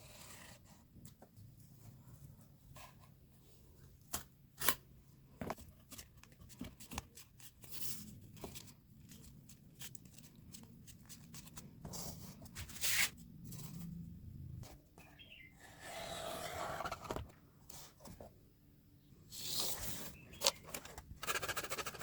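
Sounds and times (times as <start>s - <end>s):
cardboard and paper rustling: 5.4s - 13.9s, 19.5s - 21.9s.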